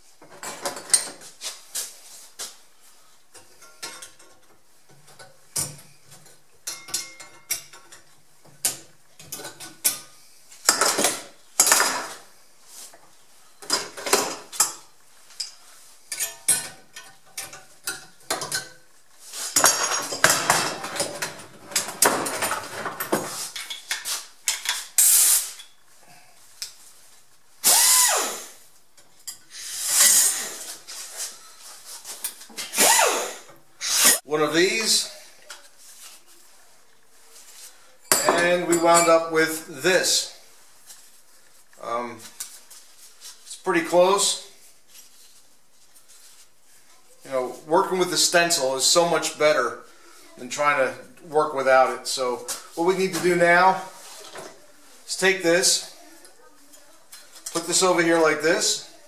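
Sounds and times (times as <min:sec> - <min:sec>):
hand shears cutting sheet steel: 0:32.6 - 0:34.2.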